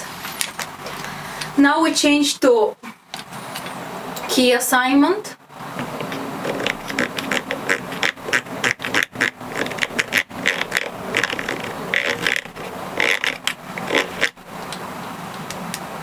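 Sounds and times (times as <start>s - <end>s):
mechanical keyboard keys clicking: 5.8s - 14.4s.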